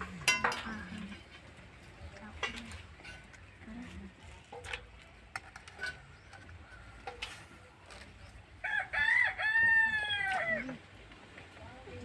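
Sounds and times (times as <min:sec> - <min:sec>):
rooster crowing: 0:08.6 - 0:10.8.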